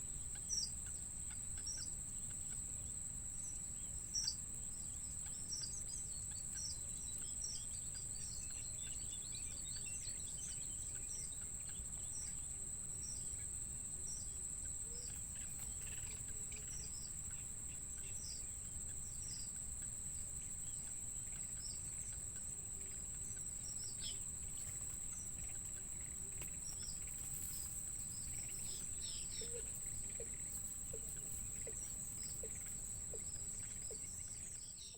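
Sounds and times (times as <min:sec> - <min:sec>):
birds chirping: 0:03.4 - 0:34.9
high-pitched insect drone: 0:15.0 - 0:34.9.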